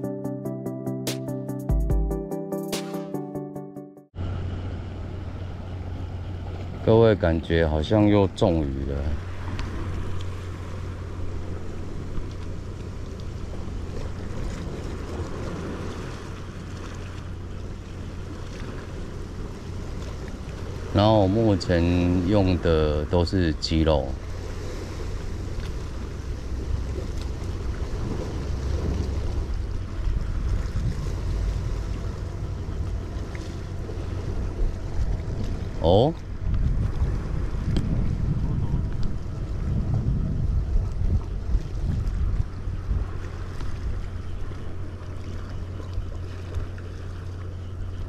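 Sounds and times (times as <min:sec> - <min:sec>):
wind rumbling on microphone: 0:04.2 - 0:46.8
surf washing against rocks: 0:06.4 - 0:44.8.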